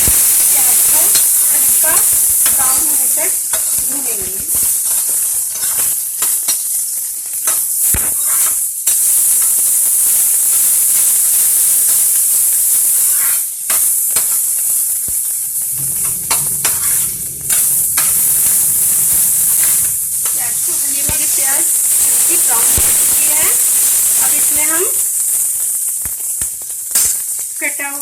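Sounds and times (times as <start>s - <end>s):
low hum: 15.7s - 24.7s.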